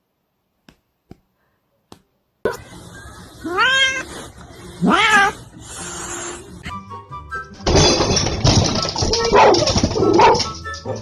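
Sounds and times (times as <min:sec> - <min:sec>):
cat meowing: 0:03.4 - 0:04.1, 0:04.8 - 0:05.4.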